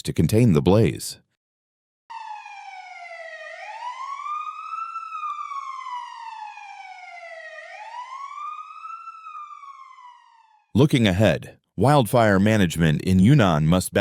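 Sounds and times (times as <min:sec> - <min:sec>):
emergency siren wailing: 0:02.1 - 0:10.8.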